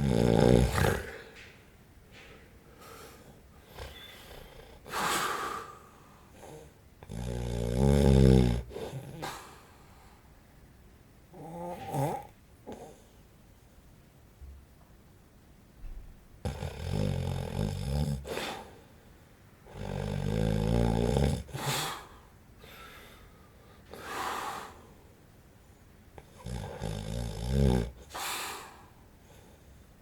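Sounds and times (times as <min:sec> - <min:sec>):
man snoring: 0:00.0 - 0:01.3, 0:07.1 - 0:09.3, 0:11.4 - 0:12.3, 0:16.4 - 0:18.6, 0:19.7 - 0:22.1, 0:26.4 - 0:28.2
breathy out-breath: 0:21.5 - 0:25.0.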